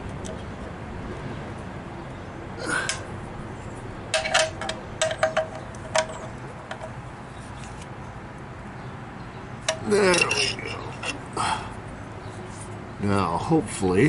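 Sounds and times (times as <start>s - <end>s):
wrench clinking on metal bolt: 4.1s - 7.0s, 9.6s - 11.2s.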